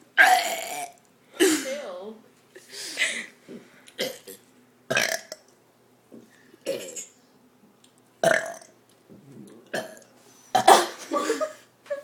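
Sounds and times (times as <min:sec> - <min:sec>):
person burping: 0:00.2 - 0:01.0, 0:04.0 - 0:05.4, 0:06.7 - 0:07.1, 0:08.2 - 0:11.0.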